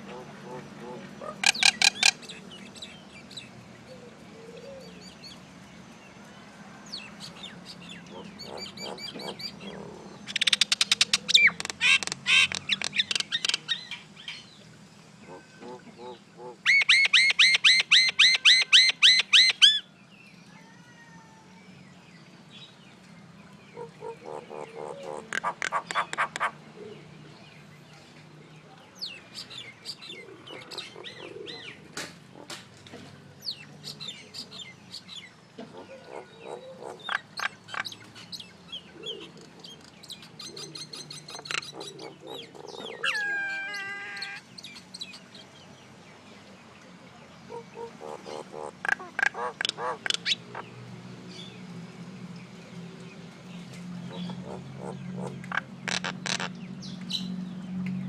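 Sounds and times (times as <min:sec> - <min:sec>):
myna calling: 0:00.0 - 0:02.3, 0:07.9 - 0:13.8, 0:23.8 - 0:26.9, 0:35.6 - 0:38.0, 0:40.6 - 0:44.5, 0:47.5 - 0:50.7.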